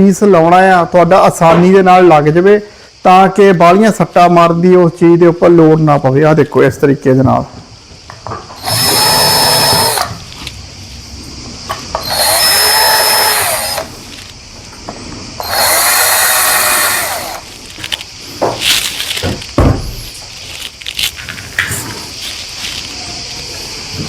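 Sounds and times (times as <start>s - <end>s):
electric drill drilling wood: 8.6s - 10.2s, 11.9s - 14.0s, 15.4s - 17.6s.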